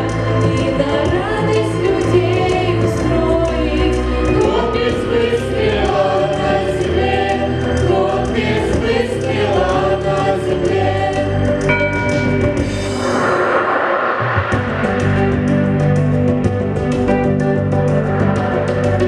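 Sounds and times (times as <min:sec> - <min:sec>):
choir singing: 0:00.0 - 0:13.4
instrumental backing music: 0:14.6 - 0:19.0.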